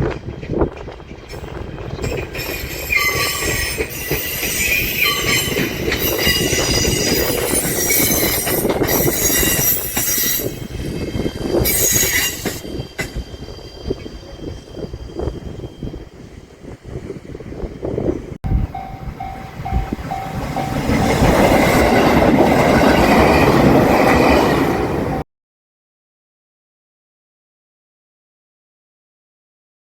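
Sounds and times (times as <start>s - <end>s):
train rumble: 0.0s - 25.2s
train wheels squealing: 1.3s - 17.4s.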